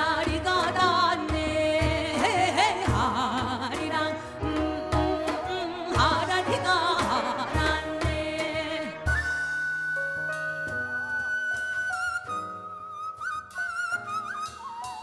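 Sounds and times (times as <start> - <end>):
low drum beats: 0.0 - 9.4.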